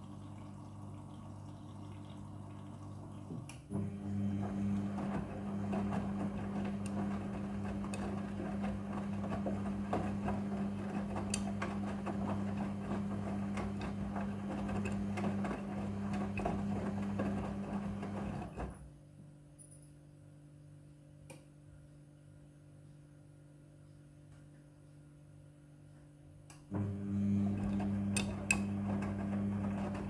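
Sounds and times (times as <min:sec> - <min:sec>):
washing machine motor humming: 0:00.0 - 0:18.8, 0:26.7 - 0:30.0.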